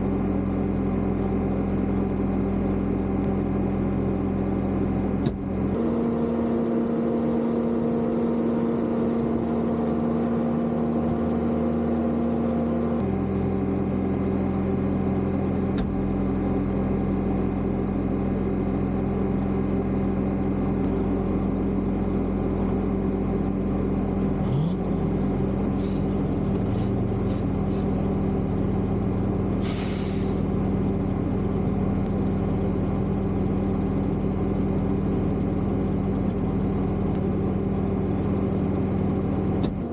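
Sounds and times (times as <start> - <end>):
diesel engine idling: 0.0 - 39.9
air release hiss: 29.6 - 30.4.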